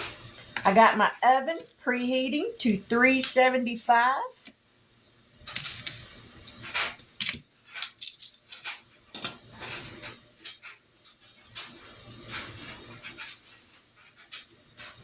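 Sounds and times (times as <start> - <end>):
seasoning shakers rattling: 5.4 - 15.0.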